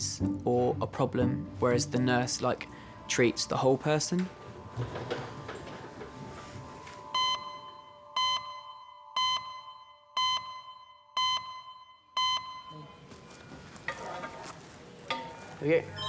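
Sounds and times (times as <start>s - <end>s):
electronic alarm beeps: 7.1s - 12.9s.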